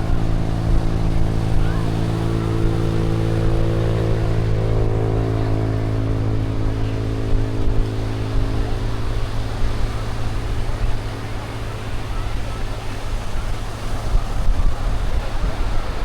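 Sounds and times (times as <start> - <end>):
low rumble: 0.0 - 16.0
vehicle engine humming: 0.0 - 16.0.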